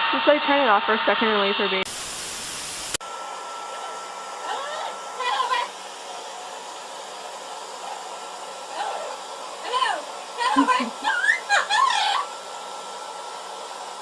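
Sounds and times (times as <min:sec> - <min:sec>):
hair dryer blowing: 0:01.2 - 0:14.0.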